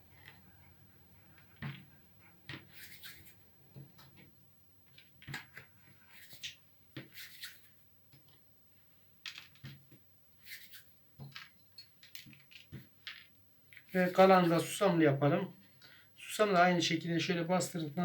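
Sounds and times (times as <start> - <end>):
dough rustling: 13.8 - 14.8.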